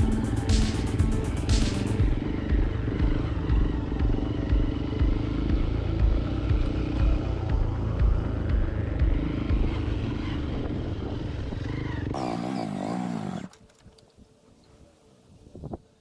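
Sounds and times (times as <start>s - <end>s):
motorcycle engine running: 0.0s - 13.5s.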